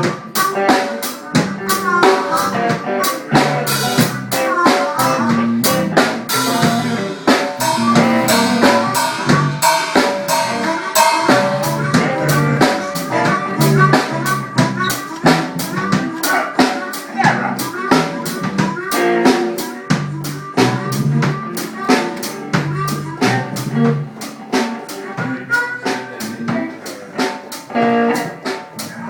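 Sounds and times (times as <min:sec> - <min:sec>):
drum kit beat: 0:00.0 - 0:29.0
live band playing: 0:00.0 - 0:29.0.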